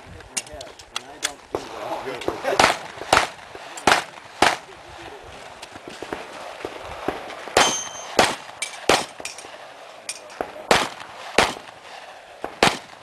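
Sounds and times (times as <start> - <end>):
gunshots: 1.5 - 13.0
metallic ring of steel target: 7.6 - 8.8.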